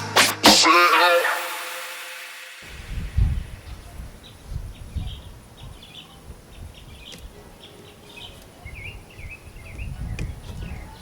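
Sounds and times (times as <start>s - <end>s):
low rumble on microphone: 2.6s - 7.4s, 8.6s - 11.0s
small birds chirping: 2.6s - 11.0s.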